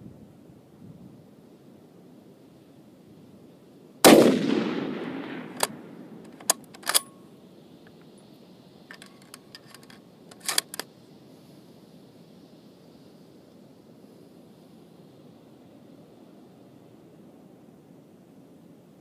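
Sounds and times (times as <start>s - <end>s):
rifle shot echoing: 4.0s - 7.0s
rifle bolt clicking: 5.2s - 7.1s, 8.9s - 10.8s.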